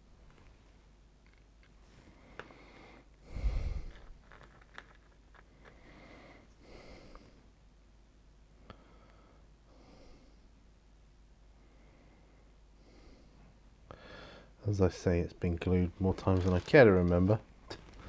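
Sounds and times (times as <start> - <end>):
soft breathing: 1.9 - 7.5, 8.6 - 10.6, 11.6 - 14.6
person breathing out through nose: 2.4 - 4.2.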